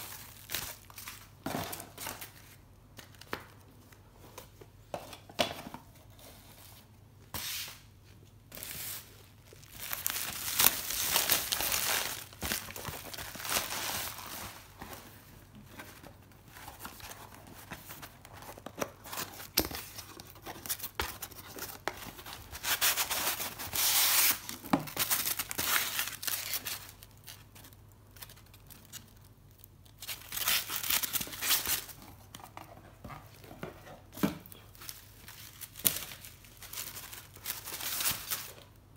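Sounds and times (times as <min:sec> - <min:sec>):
packaging tearing and crinkling: 0:08.7 - 0:14.7, 0:22.4 - 0:32.0.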